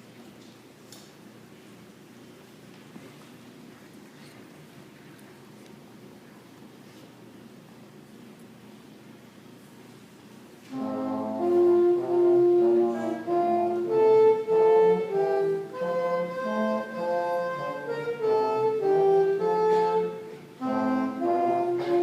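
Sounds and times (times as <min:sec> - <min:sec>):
concert band playing chords: 0:10.8 - 0:22.0.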